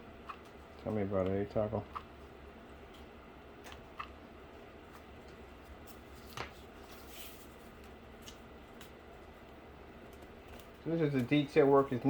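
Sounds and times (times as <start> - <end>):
low steady hum: 0.0 - 12.0
soft rustle: 5.8 - 7.8.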